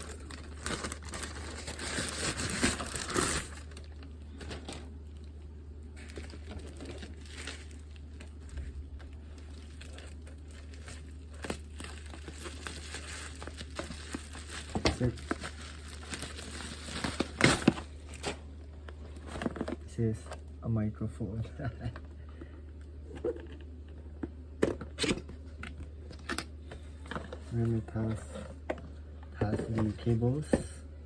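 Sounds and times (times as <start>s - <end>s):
wrapping crumpled and torn: 0.0s - 19.9s.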